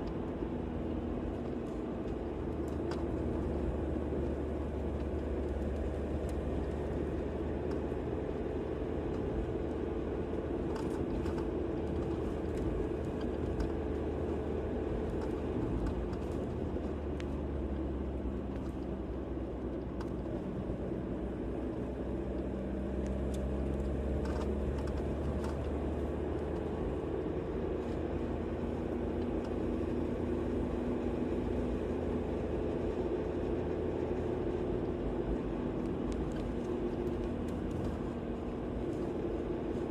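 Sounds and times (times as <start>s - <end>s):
road noise: 0.0s - 39.9s
vehicle engine drone: 0.0s - 39.9s.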